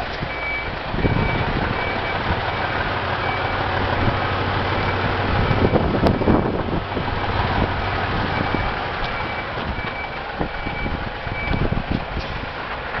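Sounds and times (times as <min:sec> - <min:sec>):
diesel truck engine running: 0:00.0 - 0:13.0
reversing beeper: 0:00.3 - 0:03.7, 0:08.3 - 0:11.8.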